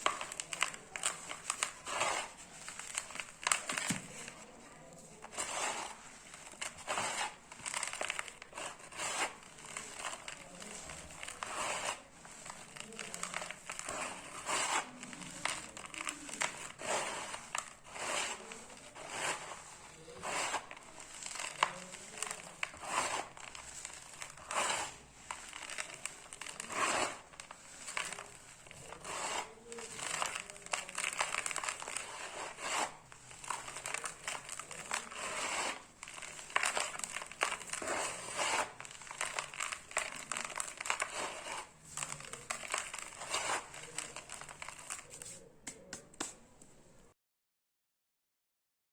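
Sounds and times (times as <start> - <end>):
dry cement crumbling: 0.0 - 46.7.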